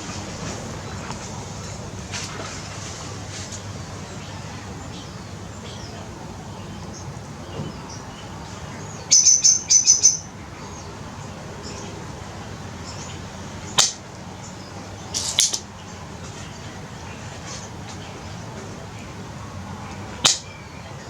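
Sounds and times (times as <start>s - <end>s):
bird chirping: 4.0s - 12.0s.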